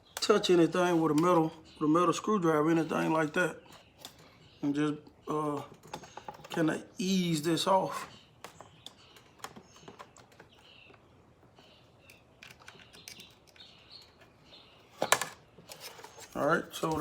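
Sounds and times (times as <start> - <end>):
birds chirping faintly: 0.0 - 17.0.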